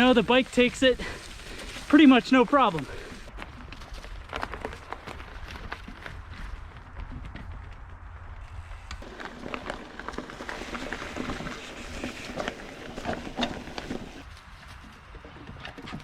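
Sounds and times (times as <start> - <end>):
bike tyres crunching on trail: 0.0 - 16.0
bike rattling and knocking: 9.0 - 14.3.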